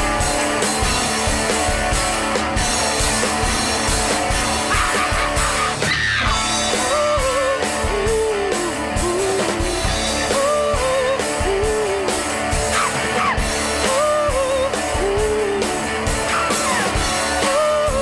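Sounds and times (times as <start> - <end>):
electric guitar: 0.0 - 18.0
steady drum beat: 0.0 - 18.0
woman singing: 13.8 - 15.8.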